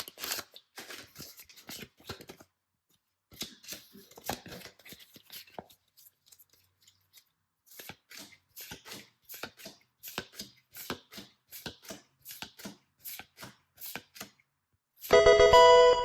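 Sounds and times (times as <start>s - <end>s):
bright musical chord: 15.1s - 16.0s.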